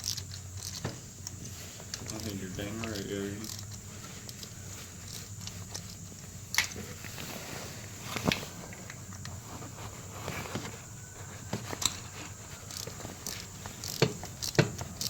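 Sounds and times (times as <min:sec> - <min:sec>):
hand tools clicking and tapping: 0:00.0 - 0:07.0, 0:10.5 - 0:15.0.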